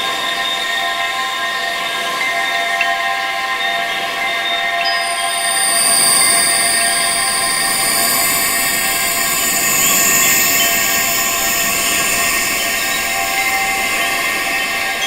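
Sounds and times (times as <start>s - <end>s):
wind chimes ringing: 0.0s - 15.0s
high-pitched hiss: 4.5s - 15.0s.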